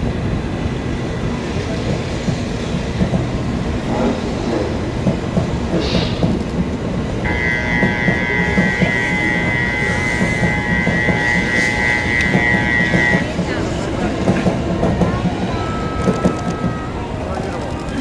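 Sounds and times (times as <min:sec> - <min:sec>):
train clatter: 0:00.0 - 0:18.0
train wheels rumbling: 0:00.0 - 0:18.0
steady high tone: 0:07.3 - 0:14.2, 0:14.8 - 0:18.0.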